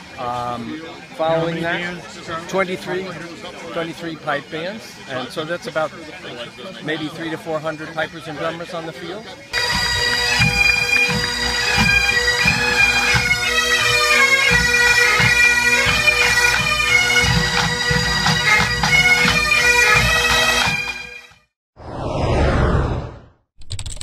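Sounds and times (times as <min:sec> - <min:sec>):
bagpipes playing: 0:09.5 - 0:21.4
short rush of noise: 0:21.8 - 0:23.4.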